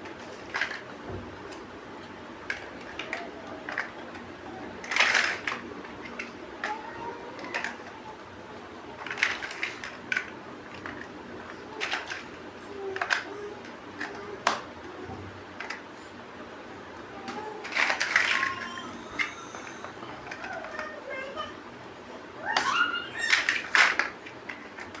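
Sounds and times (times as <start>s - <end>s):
plastic bricks clicking and clattering: 0.0s - 1.7s, 2.4s - 8.0s, 9.0s - 14.7s, 17.2s - 21.0s, 22.5s - 25.0s.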